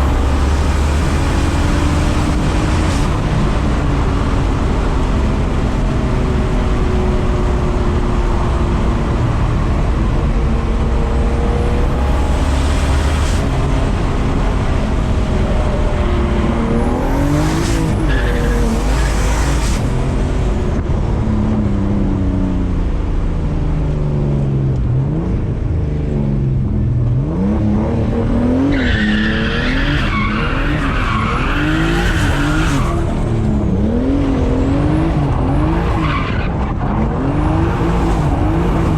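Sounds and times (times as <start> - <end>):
car engine revving: 0.0 - 38.9.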